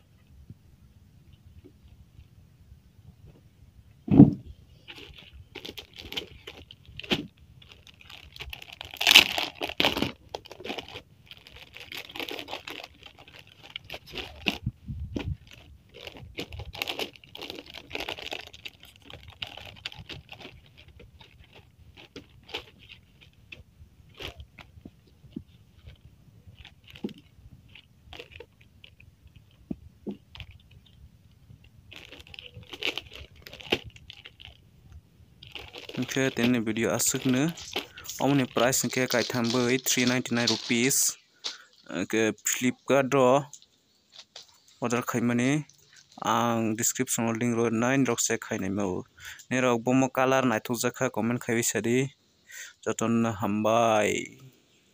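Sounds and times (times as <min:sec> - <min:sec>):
sharp knock: 0:04.1 - 0:04.4
plastic packaging crinkling: 0:04.7 - 0:49.6.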